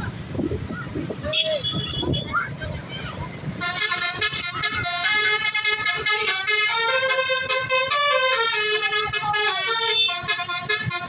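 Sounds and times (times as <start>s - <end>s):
multi-tone musical bus horn: 1.3s - 2.3s, 3.6s - 11.0s.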